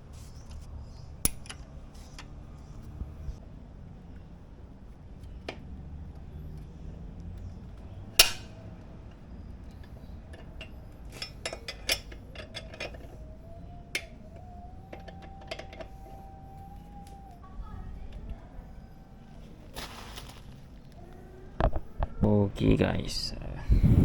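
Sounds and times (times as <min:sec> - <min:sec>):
metal tools clinking: 0:09.8 - 0:17.1.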